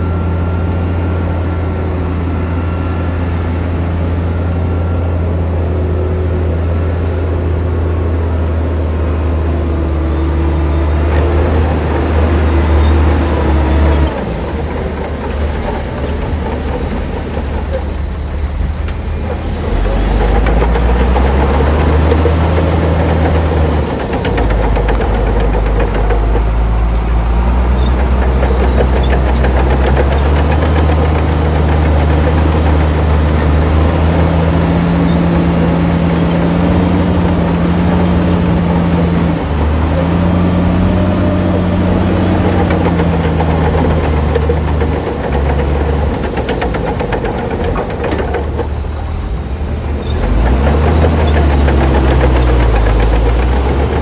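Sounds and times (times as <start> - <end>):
heavy diesel engine under load: 0.0 - 54.0.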